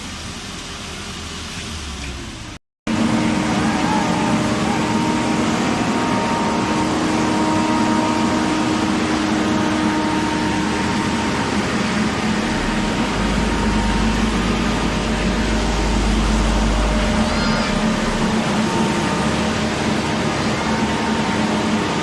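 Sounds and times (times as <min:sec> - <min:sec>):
heavy construction machinery: 0:00.0 - 0:22.0
deep low rumble: 0:12.1 - 0:20.3.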